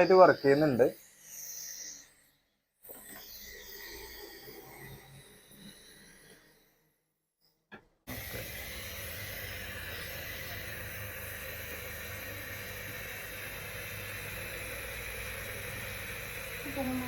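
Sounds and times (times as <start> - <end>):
compressor humming: 8.1 - 17.0
hiss of air and mist: 8.1 - 17.0.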